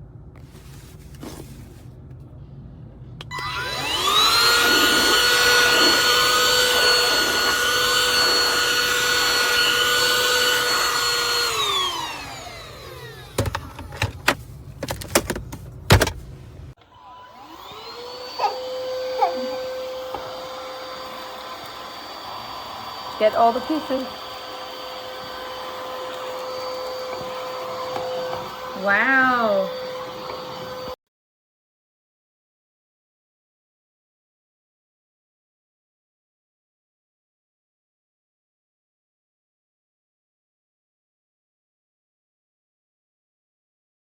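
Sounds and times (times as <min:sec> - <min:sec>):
handheld vacuum motor whine: 0:03.2 - 0:16.2, 0:16.8 - 0:31.0.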